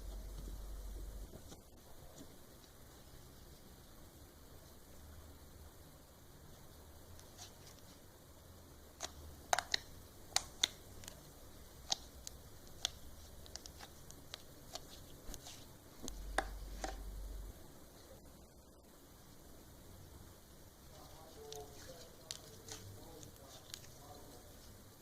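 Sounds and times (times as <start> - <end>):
low hum: 0.0 - 1.4, 16.0 - 18.9.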